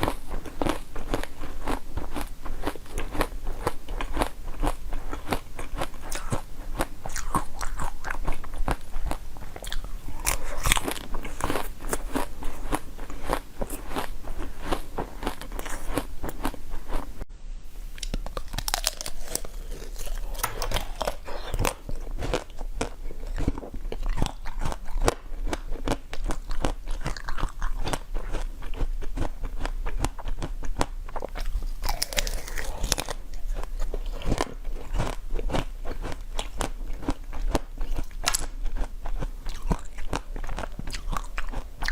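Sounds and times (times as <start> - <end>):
person chewing crunchy food: 0.0 - 17.2, 18.0 - 41.9.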